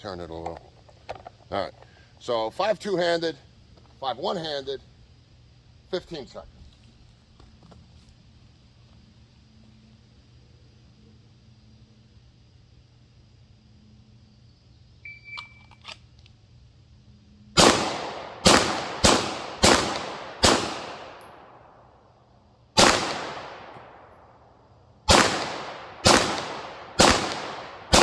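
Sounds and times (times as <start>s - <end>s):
pistol shots with echo: 17.6s - 21.8s, 22.8s - 24.2s, 25.1s - 28.0s.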